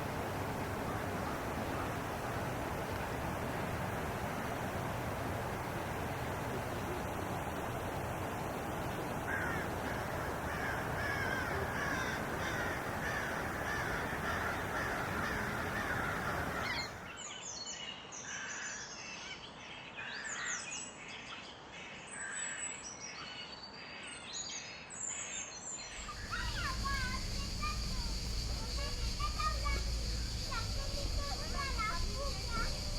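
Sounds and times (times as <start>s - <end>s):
birds calling: 0.0s - 7.6s, 8.8s - 17.1s, 25.9s - 32.9s
steady rushing noise: 0.0s - 17.0s, 25.9s - 32.9s
harsh bird calls: 9.2s - 17.1s, 25.9s - 32.9s.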